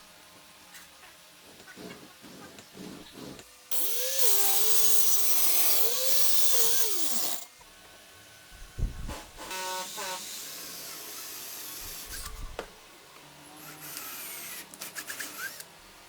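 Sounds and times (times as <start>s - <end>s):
angle grinder grinding wood: 2.8s - 7.5s.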